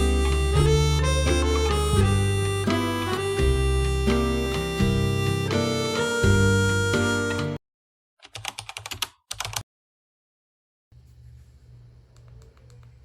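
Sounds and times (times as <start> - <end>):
guitar music from speaker: 0.0 - 7.6
faint low hum: 11.0 - 13.0.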